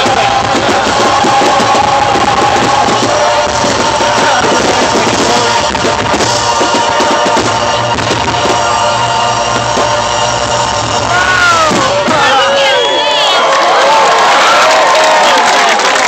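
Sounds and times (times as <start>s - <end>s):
loud rock music with singing: 0.0s - 12.5s.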